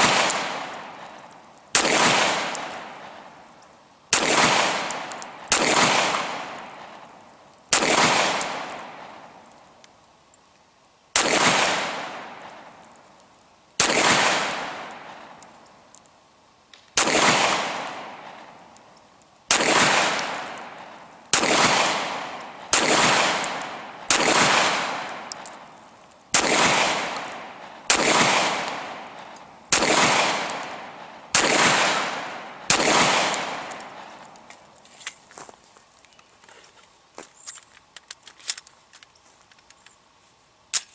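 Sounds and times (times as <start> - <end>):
pistol shots with echo: 0.0 - 3.4, 4.1 - 9.4, 11.2 - 12.8, 13.8 - 15.6, 17.0 - 18.7, 19.5 - 34.4.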